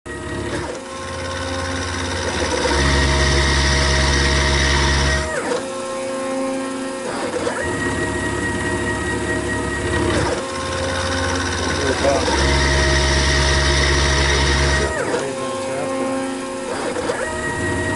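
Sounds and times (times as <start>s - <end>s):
milling machine cutting metal: 0.1s - 17.9s.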